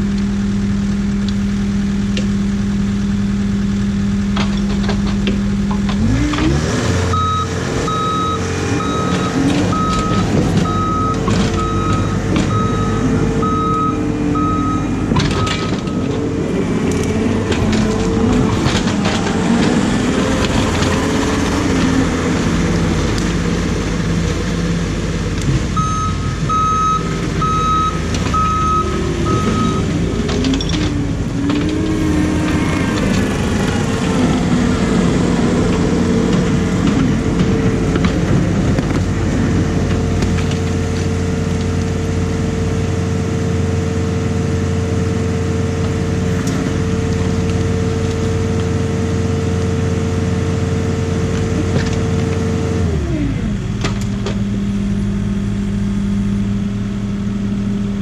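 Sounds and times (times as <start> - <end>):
excavator diesel engine: 0.0 - 58.0
backup alarm beeping: 7.1 - 16.2, 25.8 - 30.1.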